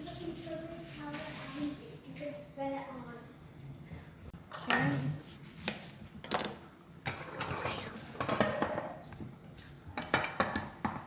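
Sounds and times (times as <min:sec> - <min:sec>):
utensils and dishes clinking: 0:04.5 - 0:05.1, 0:06.3 - 0:11.0.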